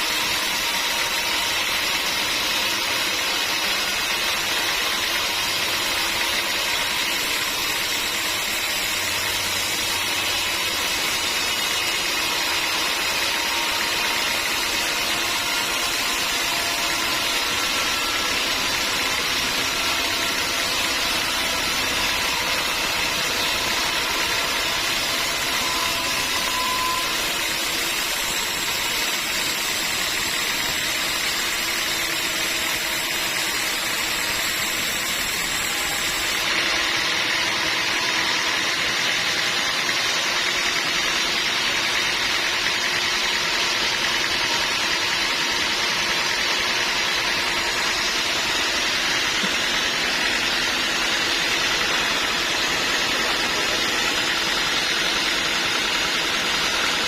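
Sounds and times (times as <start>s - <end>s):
sawmill machinery running: 0.0s - 57.0s
faint machine whines: 6.7s - 36.5s.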